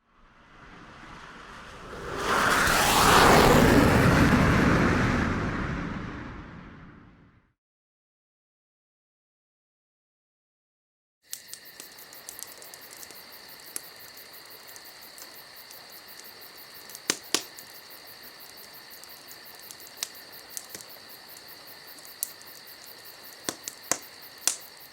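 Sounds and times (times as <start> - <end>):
crickets chirping: 11.3 - 24.9
sharp clicks: 11.3 - 24.9.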